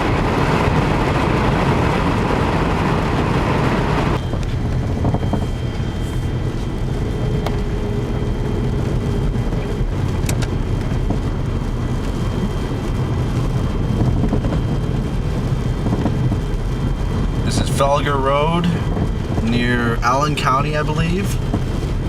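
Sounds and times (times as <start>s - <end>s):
engine and tyre rumble: 0.0s - 22.0s
faint high whine: 3.4s - 9.9s.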